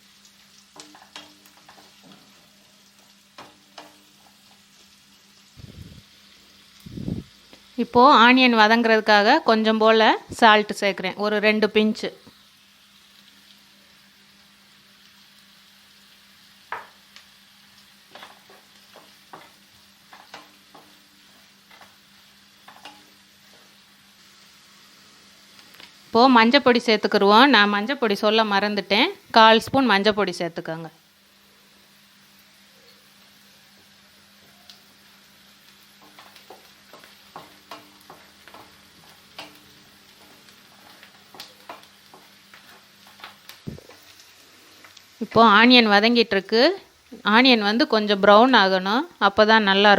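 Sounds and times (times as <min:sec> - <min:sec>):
onions sizzling in hot oil: 0:00.0 - 0:49.9
spatula scraping and knocking pan: 0:18.1 - 0:22.0, 0:36.0 - 0:44.0
spoon scraping a pan: 0:18.1 - 0:22.0, 0:22.6 - 0:23.7.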